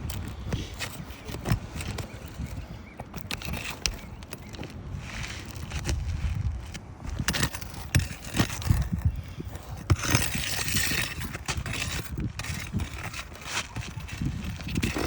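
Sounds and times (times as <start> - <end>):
metal tool scraping shingles: 0.2 - 6.0, 7.1 - 15.0.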